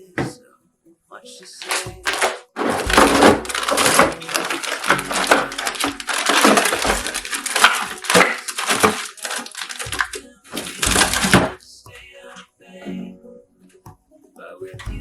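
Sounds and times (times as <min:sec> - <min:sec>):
rustling and crinkling: 0:01.6 - 0:11.6
knocks and clicks of items: 0:01.6 - 0:12.0.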